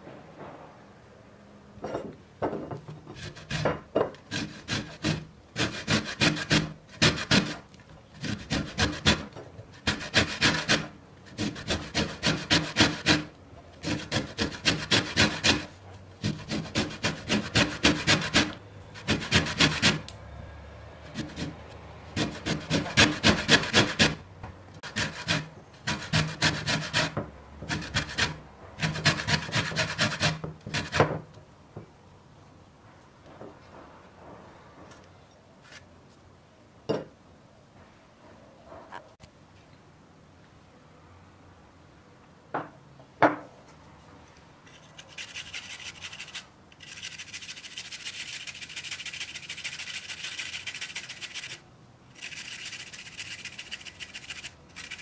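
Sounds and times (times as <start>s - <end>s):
rapid scraping strokes: 3.2s - 20.1s, 21.0s - 31.1s, 44.6s - 55.0s.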